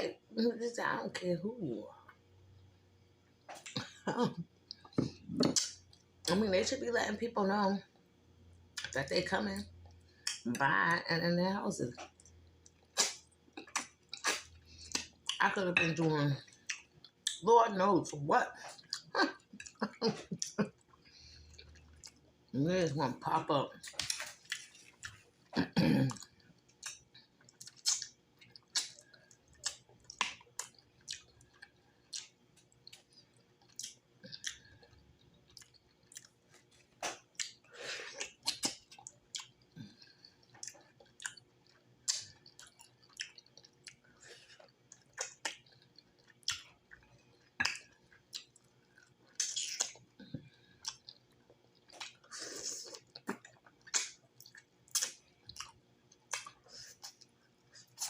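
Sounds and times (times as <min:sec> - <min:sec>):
wet chewing and lip-smacking: 0:12.0 - 0:15.4, 0:16.4 - 0:17.4, 0:18.6 - 0:22.5, 0:23.8 - 0:58.0.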